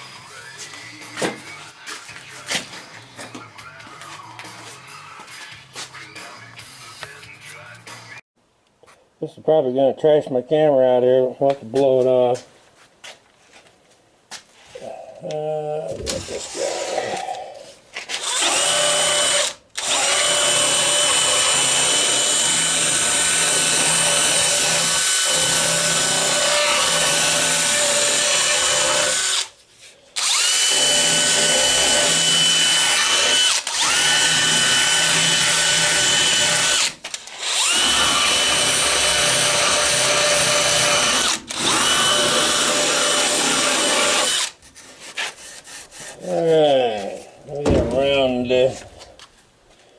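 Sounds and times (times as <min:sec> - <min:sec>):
electric drill whining: 0:18.1 - 0:29.5, 0:30.2 - 0:44.6.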